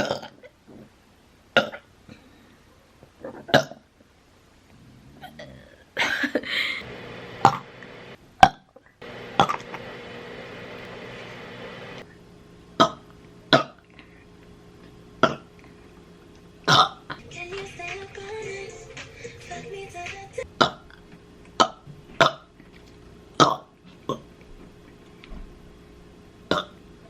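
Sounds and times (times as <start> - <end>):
woman burping: 26.5 - 26.8.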